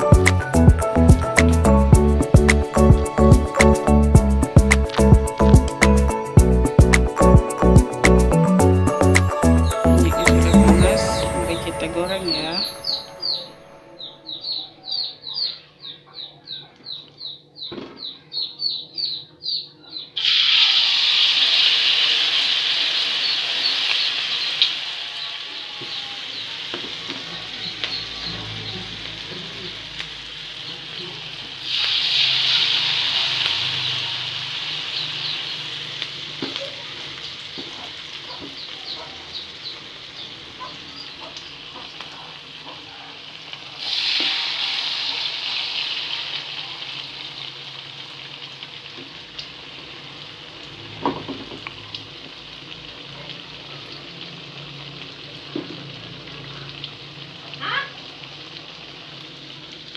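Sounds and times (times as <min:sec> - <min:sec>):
food sizzling in hot oil: 0:20.2 - 0:59.9.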